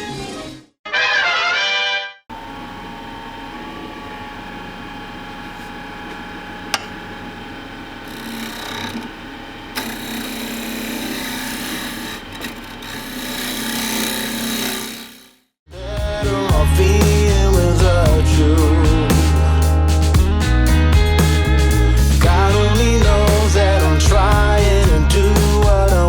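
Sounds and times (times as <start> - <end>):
lathe motor hum: 2.3 - 15.4
lathe tool scraping wood: 7.9 - 15.4.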